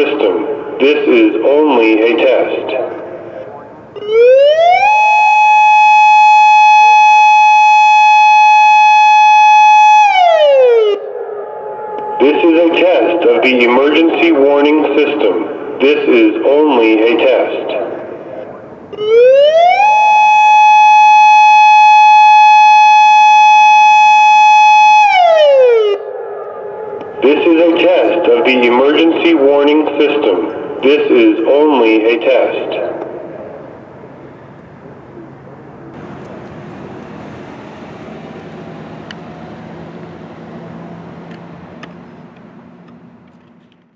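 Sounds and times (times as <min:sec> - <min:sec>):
vehicle engine hum: 0:00.0 - 0:10.4, 0:12.0 - 0:22.0, 0:26.4 - 0:43.9
electronic warning siren: 0:00.0 - 0:43.5.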